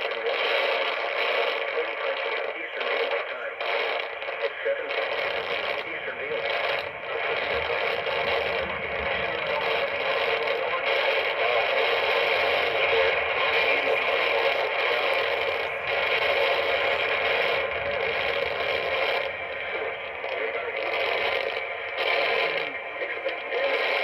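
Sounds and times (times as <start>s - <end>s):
radio static hiss: 0.0s - 24.0s.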